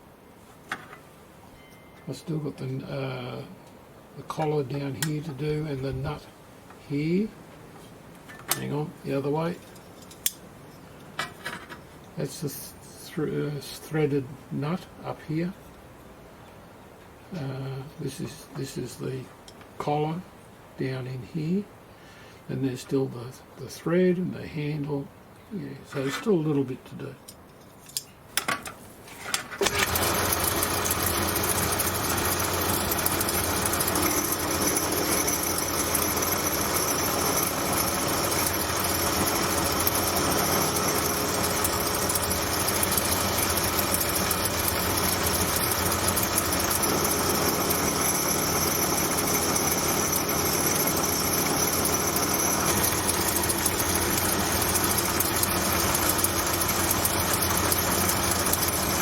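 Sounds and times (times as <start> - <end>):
machine tool electric motor running: 29.6 - 59.0.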